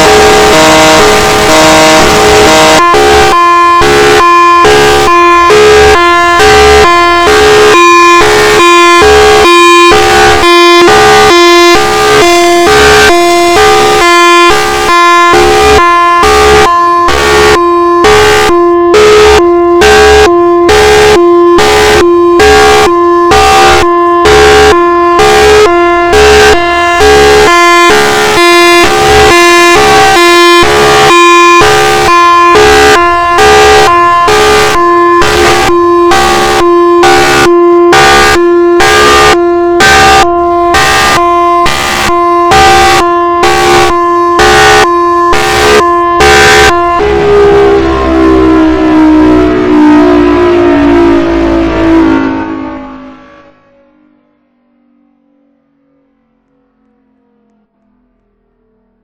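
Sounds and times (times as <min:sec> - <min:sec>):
hi-lo siren: 0:00.0 - 0:59.0.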